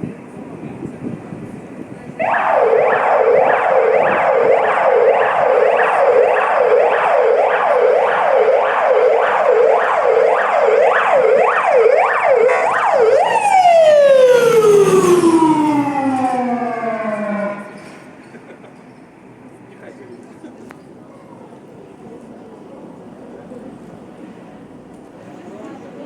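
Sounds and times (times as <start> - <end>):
alarm siren sweeping up and down: 2.2 - 18.6.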